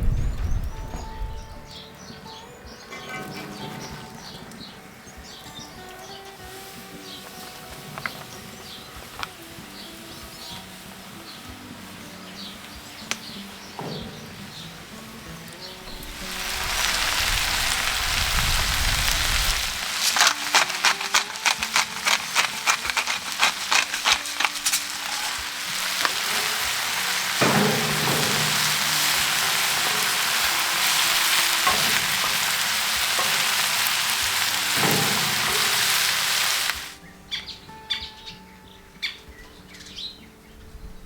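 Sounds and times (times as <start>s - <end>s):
food frying and sizzling: 0.0s - 37.5s
spitting crackles: 15.6s - 37.0s.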